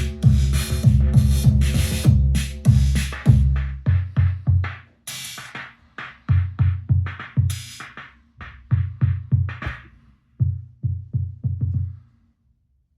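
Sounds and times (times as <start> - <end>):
kick drum hits: 8.8 - 11.8
snare hits: 9.5 - 10.0.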